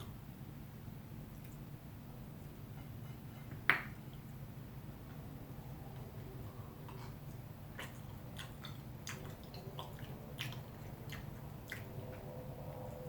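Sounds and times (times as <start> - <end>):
person chewing food: 6.6 - 13.0.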